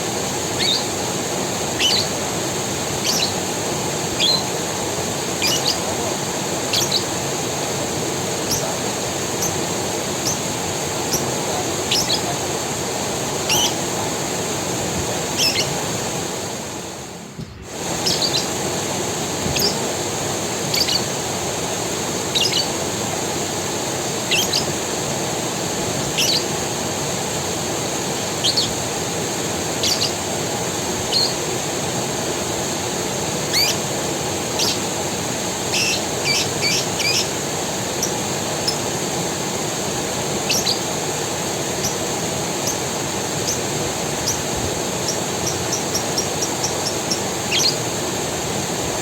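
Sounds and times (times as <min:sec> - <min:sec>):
creek water flowing: 0:00.0 - 0:49.0
bird chirping: 0:00.6 - 0:00.9, 0:01.8 - 0:02.1, 0:03.0 - 0:03.4, 0:04.2 - 0:04.5, 0:05.4 - 0:05.9, 0:06.7 - 0:07.1, 0:08.4 - 0:09.6, 0:10.2 - 0:12.4, 0:13.4 - 0:13.8, 0:15.4 - 0:15.8, 0:18.0 - 0:18.6, 0:19.5 - 0:19.8, 0:20.7 - 0:21.2, 0:22.3 - 0:22.8, 0:24.3 - 0:24.7, 0:26.2 - 0:26.5, 0:28.4 - 0:28.8, 0:29.8 - 0:30.2, 0:31.1 - 0:31.4, 0:33.5 - 0:33.8, 0:34.6 - 0:34.9, 0:35.7 - 0:37.4, 0:40.4 - 0:40.9, 0:41.8 - 0:42.0, 0:43.4 - 0:47.8.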